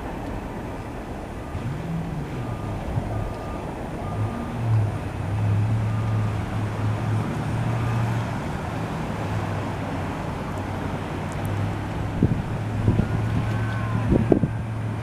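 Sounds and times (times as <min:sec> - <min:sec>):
freight train rolling past: 0:00.0 - 0:15.0.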